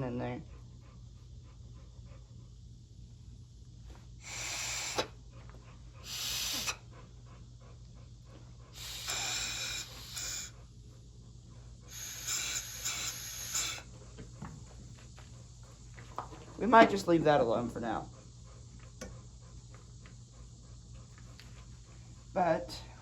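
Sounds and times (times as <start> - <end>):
hissing air bursts: 4.2 - 5.2, 6.0 - 6.8, 8.7 - 10.6, 11.9 - 13.9.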